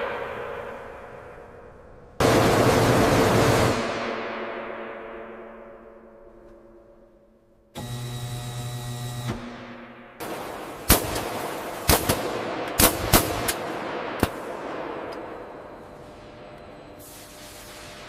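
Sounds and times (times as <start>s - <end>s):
gunshots with echo: 2.2s - 6.2s, 10.1s - 15.6s.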